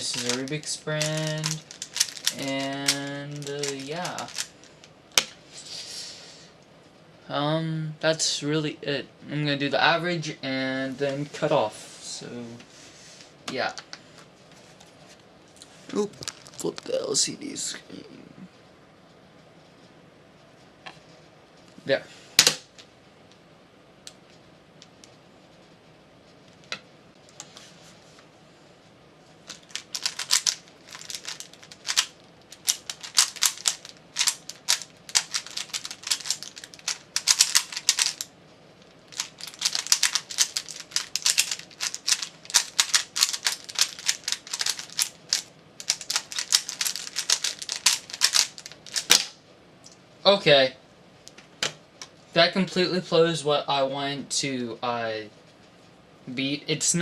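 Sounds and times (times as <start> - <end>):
puzzle cube clicking and rattling: 0.0 - 4.6, 29.5 - 38.3, 39.1 - 49.3.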